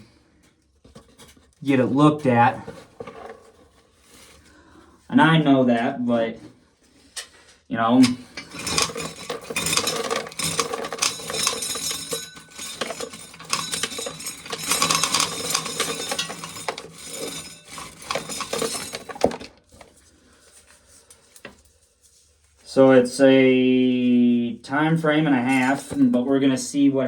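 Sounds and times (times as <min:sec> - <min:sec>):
corn kernels rattling: 0:08.4 - 0:20.0.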